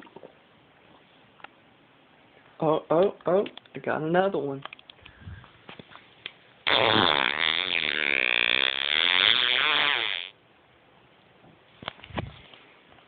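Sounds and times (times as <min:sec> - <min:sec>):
man farting: 0:06.6 - 0:10.3.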